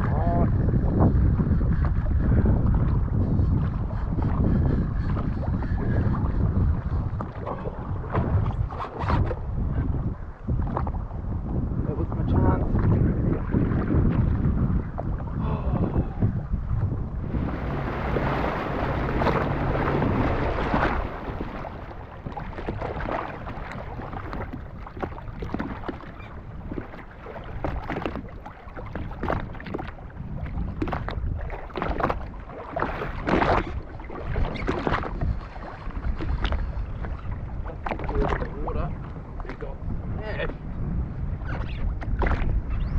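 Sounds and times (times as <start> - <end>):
water slapping against hull: 0.0 - 42.9
jet ski engine running: 17.2 - 23.6.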